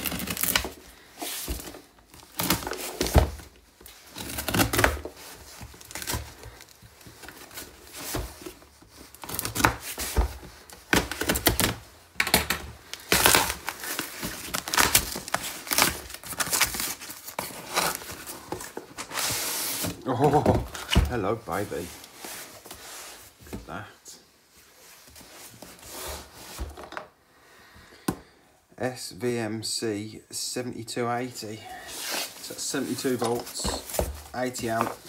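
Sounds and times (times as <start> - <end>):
packaging tearing and crinkling: 0.0 - 0.8, 4.1 - 6.6, 12.9 - 18.4.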